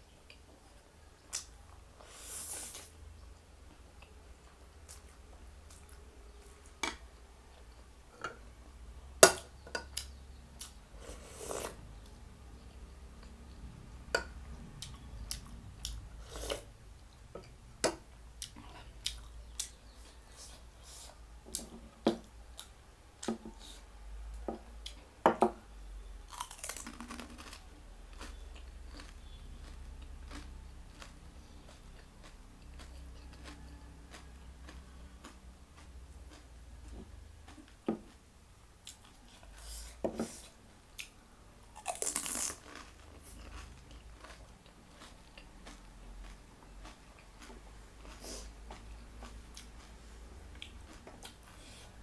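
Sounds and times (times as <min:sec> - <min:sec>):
person chewing crunchy food: 0:26.3 - 0:52.0.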